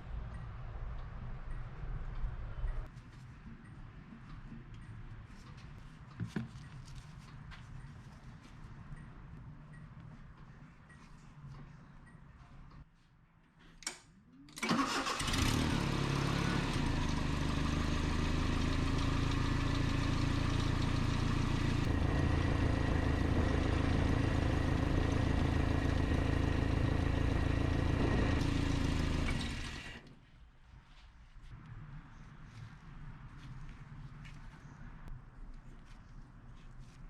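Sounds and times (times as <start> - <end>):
truck engine running: 14.7 - 30.0.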